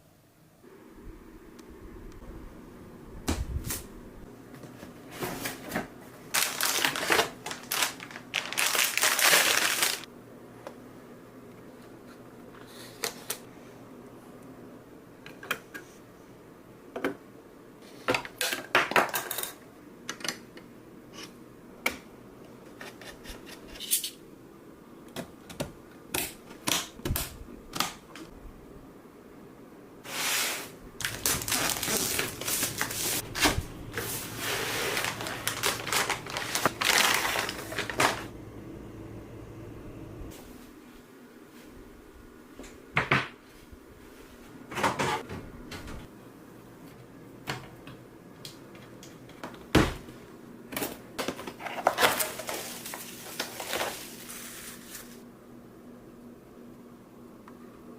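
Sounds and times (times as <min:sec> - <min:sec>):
scraping and rustling: 0:30.1 - 0:38.3.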